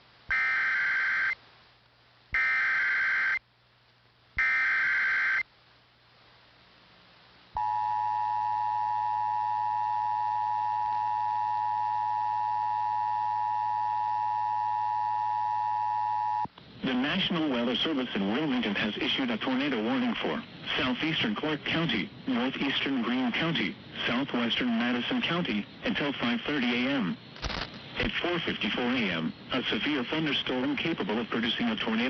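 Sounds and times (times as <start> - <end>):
digital data bursts: 27.4 - 30.3.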